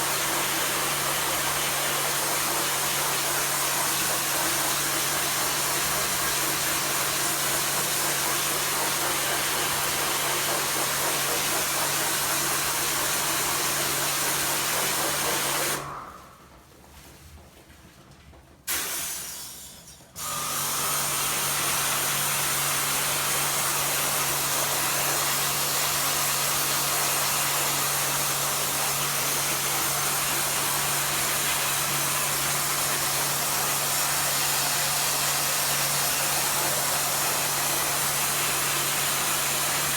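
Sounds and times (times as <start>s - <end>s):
washer motor hum: 0.0s - 16.7s, 19.8s - 39.9s
pressure washer spray hiss: 18.7s - 19.7s.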